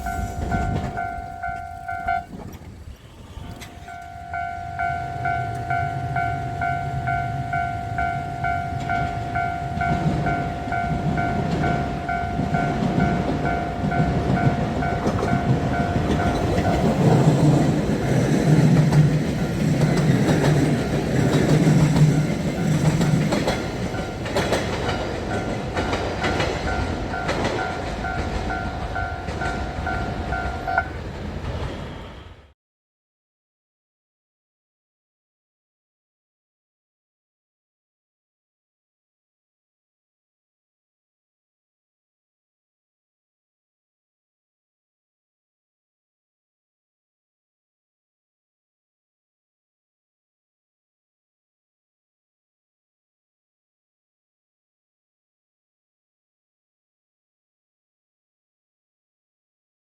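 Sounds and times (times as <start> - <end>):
level crossing warning bell: 0.0 - 2.3, 3.8 - 31.0
train rumble: 0.0 - 32.5.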